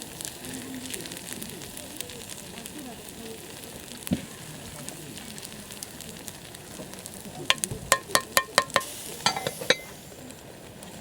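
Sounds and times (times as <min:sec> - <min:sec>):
food sizzling in a skillet: 0:00.0 - 0:11.0
utensil clinking against pan: 0:07.5 - 0:10.0.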